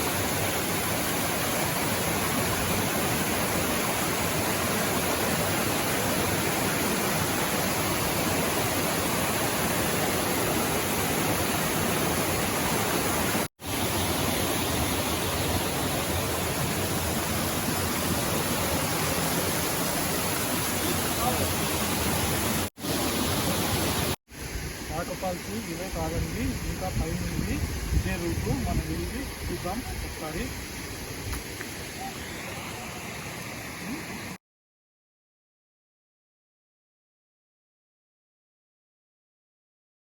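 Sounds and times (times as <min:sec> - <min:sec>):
waterfall roar: 0:00.0 - 0:24.2, 0:31.8 - 0:34.4.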